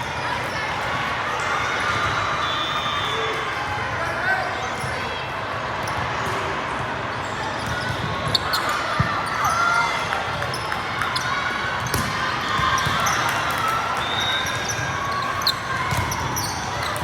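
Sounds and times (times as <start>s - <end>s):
sneaker squeaks on court floor: 7.2s - 17.0s.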